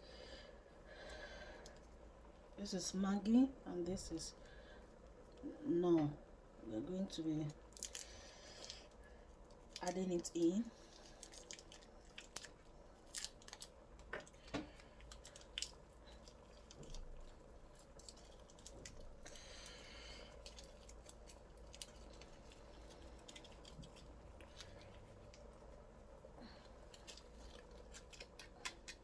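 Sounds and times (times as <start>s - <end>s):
low room hum: 0.0s - 29.0s
foil wrappers crinkling: 7.6s - 29.0s.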